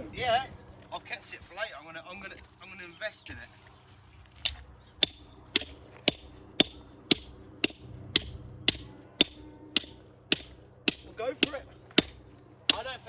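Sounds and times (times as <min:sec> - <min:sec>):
hammer blows on stone: 0:04.4 - 0:13.0.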